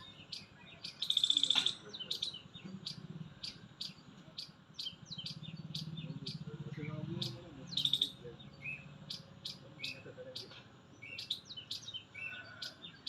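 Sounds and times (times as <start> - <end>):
small bird chirping: 0.0 - 13.0.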